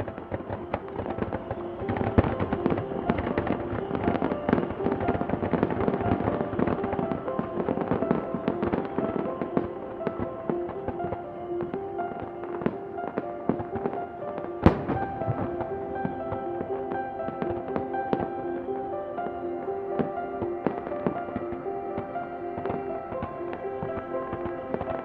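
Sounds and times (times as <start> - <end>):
fireworks bangs and crackling: 0.0 - 18.4.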